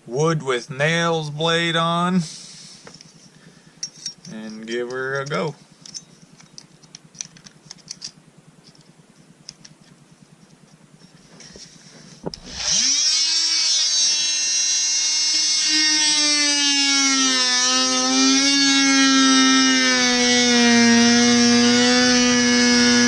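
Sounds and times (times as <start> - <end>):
multi-tool cutting wood: 12.3 - 23.0
oscillating multi-tool buzzing: 12.4 - 23.0.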